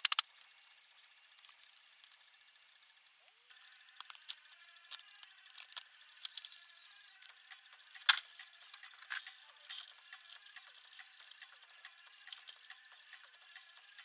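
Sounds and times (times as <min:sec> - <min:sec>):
small metal objects clicking: 0:03.9 - 0:14.0.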